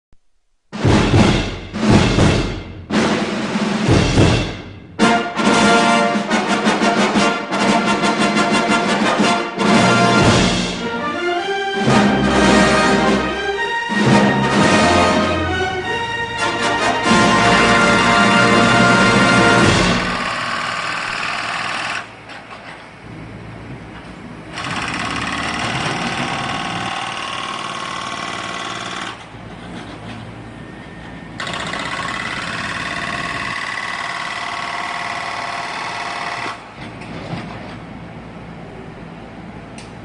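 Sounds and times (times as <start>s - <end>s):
electric power tool whining: 18.7s - 22.6s, 24.5s - 29.4s, 31.4s - 36.7s.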